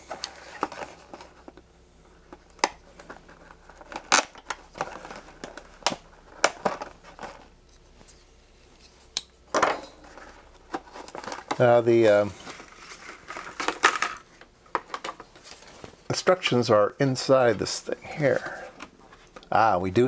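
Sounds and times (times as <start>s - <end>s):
bag crinkling: 10.0s - 14.4s.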